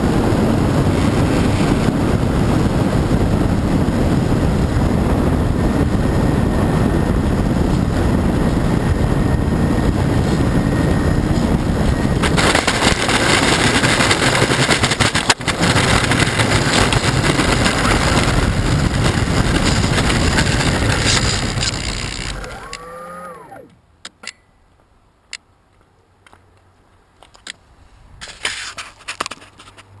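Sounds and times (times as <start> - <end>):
motor spinning down whine: 0.1 - 23.8
model airplane motor running: 0.3 - 23.8.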